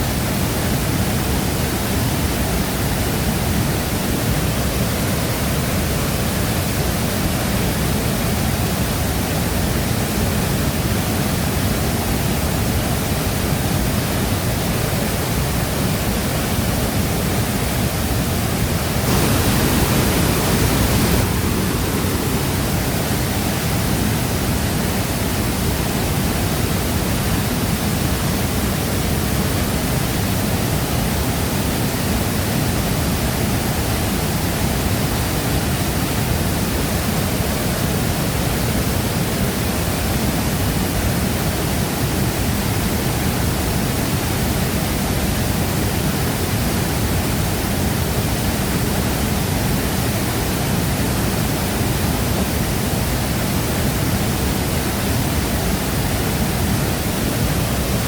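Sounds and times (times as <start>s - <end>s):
waterfall rushing: 0.1s - 58.0s.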